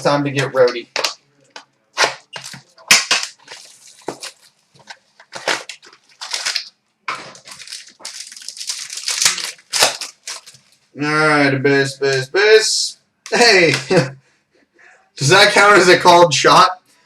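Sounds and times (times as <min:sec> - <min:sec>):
wrapper tearing crackles and rustles: 0:00.8 - 0:10.9.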